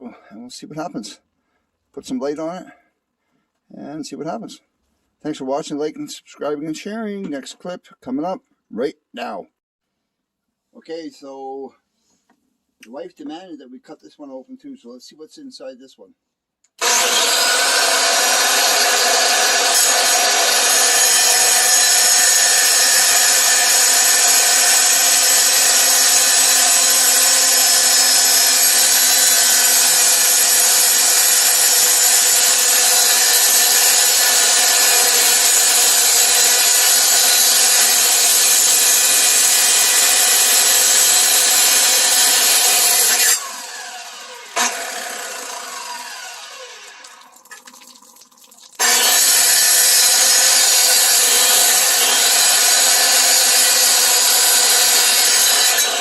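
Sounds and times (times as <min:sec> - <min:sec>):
power saw cutting rock: 0:16.8 - 0:47.2, 0:48.8 - 0:56.0
saw blade winding down: 0:16.8 - 0:47.2, 0:48.8 - 0:56.0.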